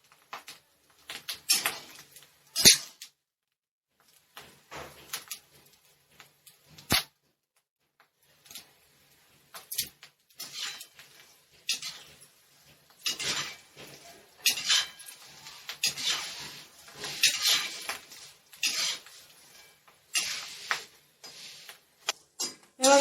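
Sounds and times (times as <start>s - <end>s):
metal strainer scraping a metal pan: 1.2s - 3.0s, 9.5s - 23.0s.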